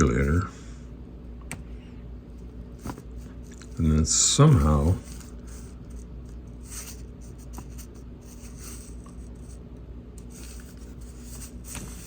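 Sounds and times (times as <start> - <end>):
low electrical hum: 0.0 - 12.0
faint rustling and scratching: 2.8 - 9.6, 10.2 - 12.0.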